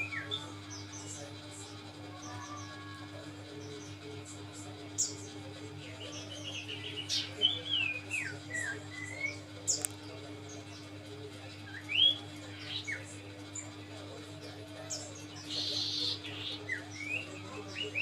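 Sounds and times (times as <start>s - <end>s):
steady low hum: 0.0s - 18.0s
bird whistling song: 6.2s - 9.8s, 11.7s - 13.1s.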